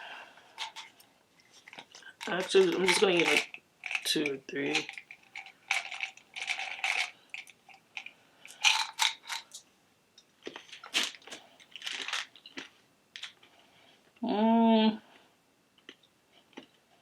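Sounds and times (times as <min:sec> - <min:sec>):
candies rattling in plastic tube: 0:00.6 - 0:09.6, 0:10.6 - 0:13.4
candy crunching and chewing: 0:10.4 - 0:13.5.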